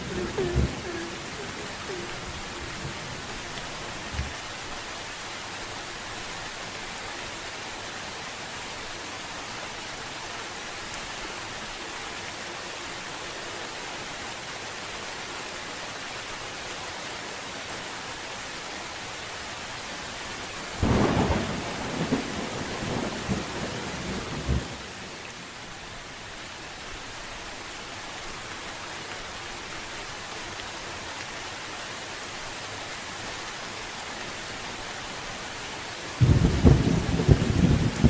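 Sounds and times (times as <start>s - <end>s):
thunder clap and rumble: 0.0s - 4.4s, 20.8s - 24.8s, 36.2s - 38.0s
steady rain: 0.0s - 38.0s.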